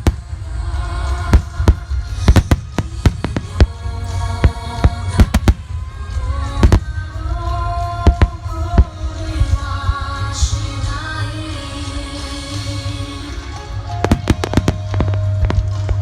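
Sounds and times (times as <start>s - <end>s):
firework shells bursting: 0.0s - 6.0s, 6.6s - 7.2s, 14.1s - 16.0s
low rumble: 0.0s - 11.5s, 14.0s - 16.0s
music: 0.0s - 16.0s.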